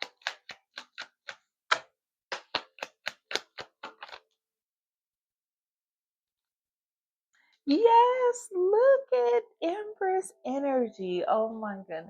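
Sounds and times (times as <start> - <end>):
cards being shuffled: 0.0 - 4.4.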